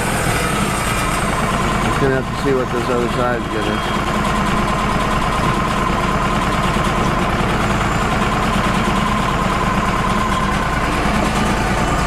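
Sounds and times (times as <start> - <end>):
sawmill engine running: 0.0 - 12.0.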